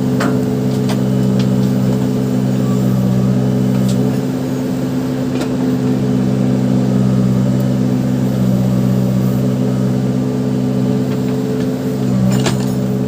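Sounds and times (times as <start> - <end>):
backhoe diesel engine running: 0.0 - 13.0.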